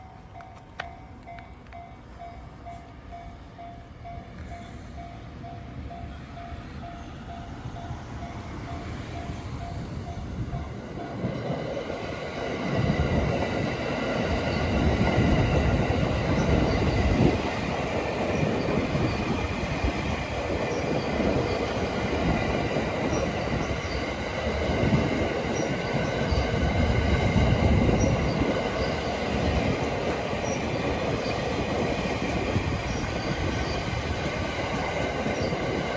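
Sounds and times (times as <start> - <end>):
electric train rumble: 0.0 - 35.9.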